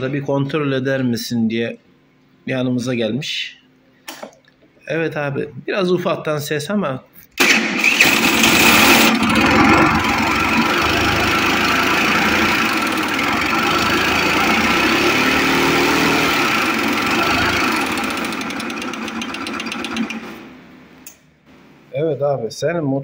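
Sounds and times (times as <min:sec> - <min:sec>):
motorcycle engine mechanical racket: 0:16.8 - 0:20.5.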